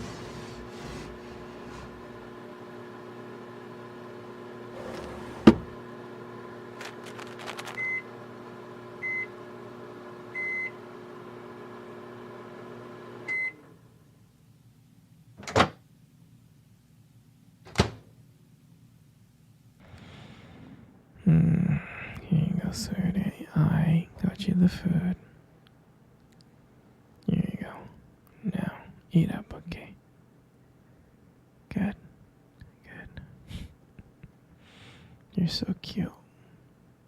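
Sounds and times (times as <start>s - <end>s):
microwave oven humming: 0.0s - 29.1s.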